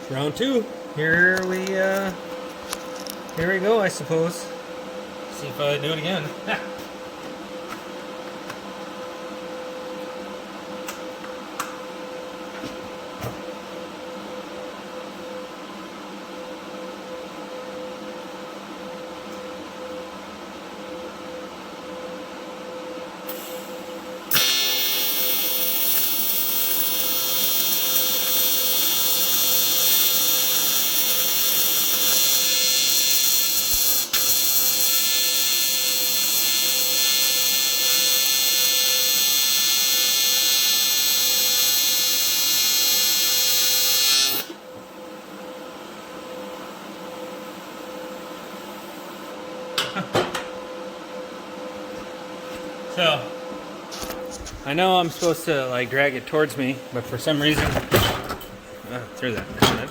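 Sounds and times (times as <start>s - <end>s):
welding arc buzzing: 23.3s - 44.6s.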